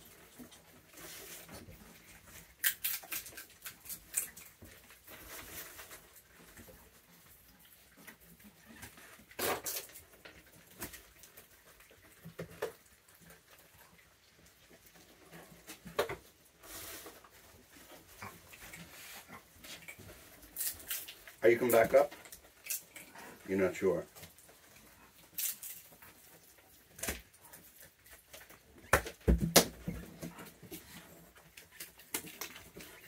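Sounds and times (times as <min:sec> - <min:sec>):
sharp knocks and clatters: 0:28.8 - 0:30.4.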